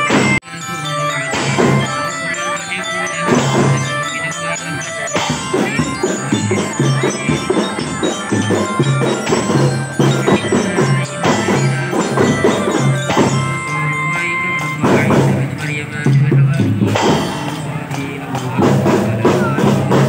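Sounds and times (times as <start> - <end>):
bell-like lyre notes: 0.0 - 15.5
marching drums beating: 1.2 - 20.0.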